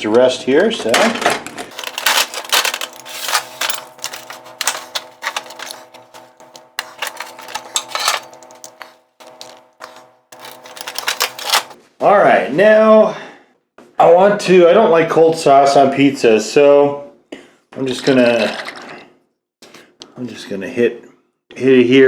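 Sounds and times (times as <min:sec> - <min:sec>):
rapid irregular clicking: 0:01.7 - 0:11.8
steady hum: 0:01.7 - 0:11.8.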